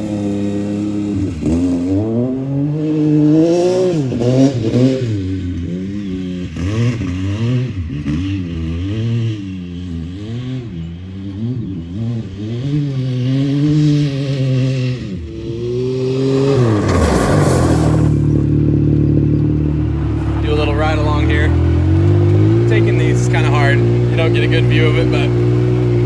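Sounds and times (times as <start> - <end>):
engine revving: 0.0 - 26.0
tires spinning hiss: 15.5 - 18.6.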